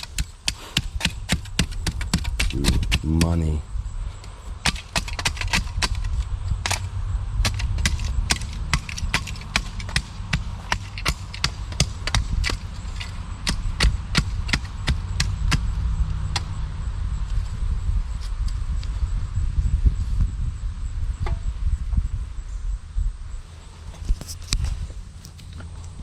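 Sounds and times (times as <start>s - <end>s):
sharp knocks and clicks: 0.0s - 3.5s, 4.6s - 15.7s
steady low rumble: 0.0s - 26.0s.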